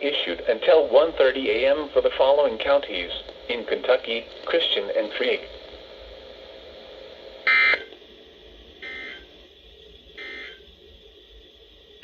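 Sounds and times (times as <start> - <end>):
faint steady hiss: 0.0 - 12.0
short data tone bursts: 7.5 - 7.9, 8.8 - 9.3, 10.2 - 10.6.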